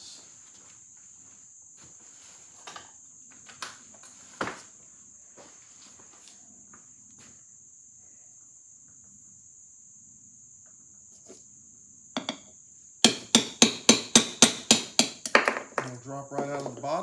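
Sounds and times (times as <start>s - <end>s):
hammer tapping metal: 12.2s - 15.6s
hammer blows ringing on metal: 13.0s - 15.3s.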